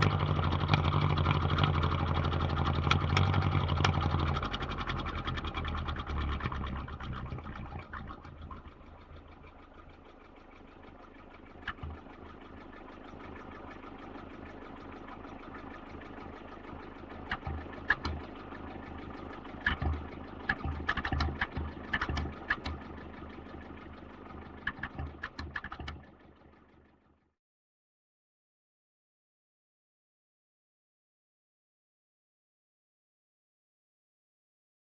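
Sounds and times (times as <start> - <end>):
sharp irregular clicks and knocks: 0.0 - 26.2
car engine idling: 0.0 - 27.0.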